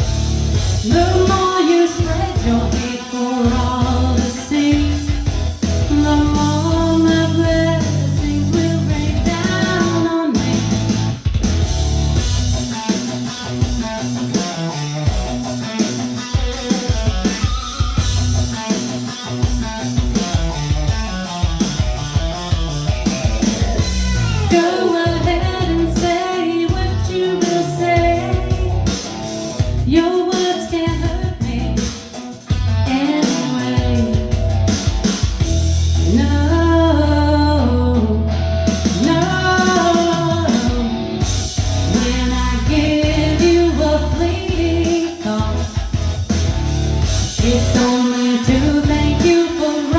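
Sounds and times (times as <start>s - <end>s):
guitar accompaniment: 0.0s - 49.9s
woman singing pop song: 0.8s - 10.9s, 24.2s - 34.8s, 36.0s - 41.2s, 41.8s - 46.0s, 47.3s - 49.9s.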